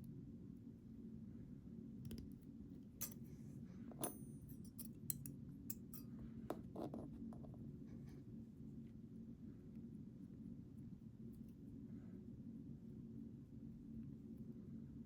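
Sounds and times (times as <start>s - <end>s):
small metal clicks and taps: 2.0s - 2.4s
high metallic ring: 3.0s - 3.3s, 4.0s - 6.2s.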